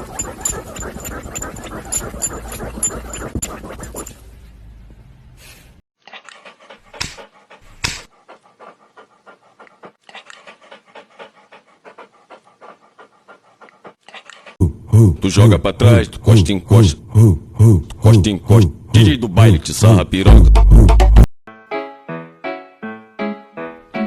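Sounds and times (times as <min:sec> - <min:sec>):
dog panting: 0:00.0 - 0:04.2, 0:06.1 - 0:14.6.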